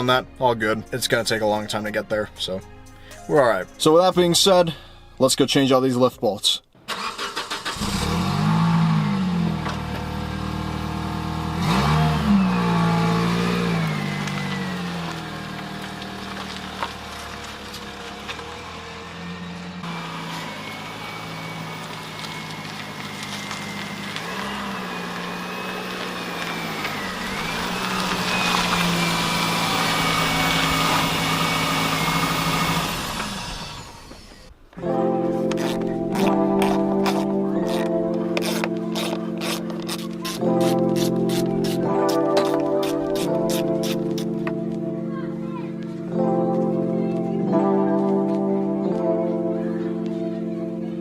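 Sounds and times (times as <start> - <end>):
car engine revving: 6.9 - 44.6.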